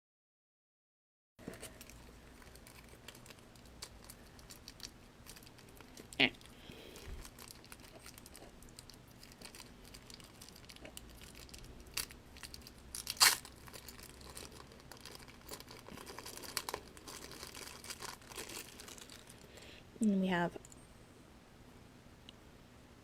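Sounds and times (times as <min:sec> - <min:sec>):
plastic packaging crinkling: 0:01.4 - 0:19.6.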